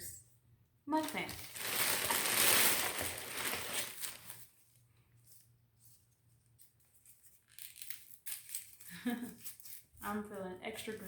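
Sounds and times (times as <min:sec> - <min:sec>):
rustling and crinkling: 0:01.0 - 0:11.0.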